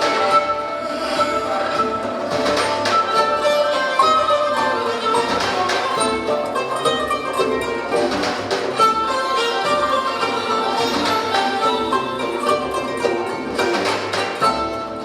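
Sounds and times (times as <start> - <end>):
bowed string melody: 0.0 - 15.0
light percussive strikes: 0.0 - 15.0
plucked strings: 0.0 - 15.0.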